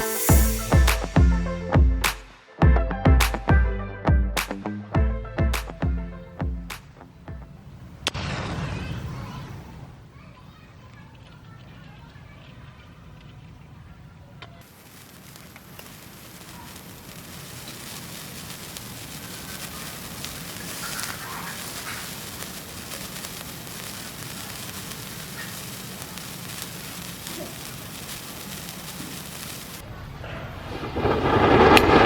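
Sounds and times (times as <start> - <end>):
burning matches hissing and crackling: 0.0 - 1.2, 14.6 - 29.8.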